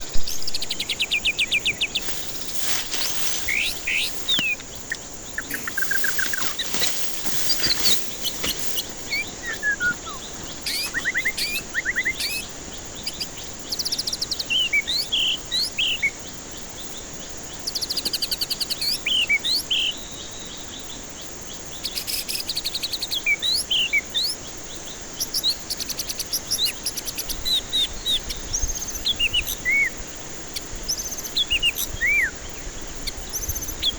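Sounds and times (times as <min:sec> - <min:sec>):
steady high hiss: 0:00.0 - 0:17.2
songbird singing whistles: 0:00.3 - 0:16.2, 0:30.6 - 0:32.4.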